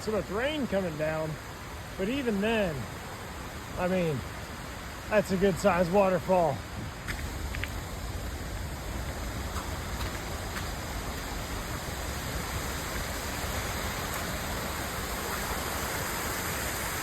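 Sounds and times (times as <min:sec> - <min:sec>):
waterfall pouring: 0:05.0 - 0:17.0.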